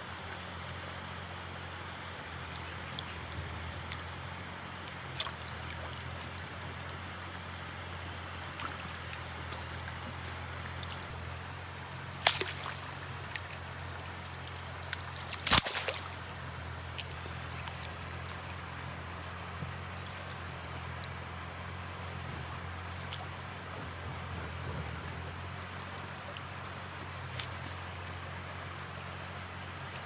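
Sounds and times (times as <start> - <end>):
low engine hum: 0.0 - 30.0
water sloshing and splashing: 5.0 - 30.0
sharp splashes: 12.1 - 18.5.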